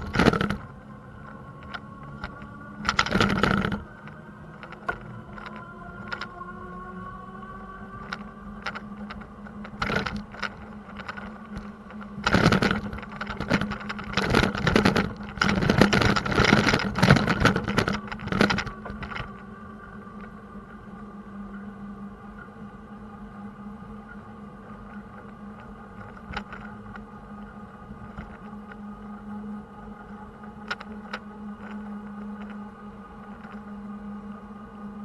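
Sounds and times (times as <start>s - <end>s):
bicycle rattling over rough road: 0.0s - 0.7s, 1.6s - 3.9s, 4.6s - 6.4s, 8.0s - 19.4s, 24.8s - 29.0s
steady low hum: 0.0s - 35.0s.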